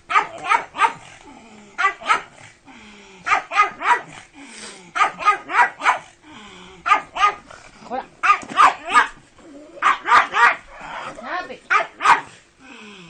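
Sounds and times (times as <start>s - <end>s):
dog barking: 0.1s - 1.1s, 1.8s - 2.4s, 3.3s - 4.2s, 5.0s - 6.1s, 6.8s - 7.4s, 8.2s - 9.2s, 9.8s - 11.1s, 11.7s - 12.4s.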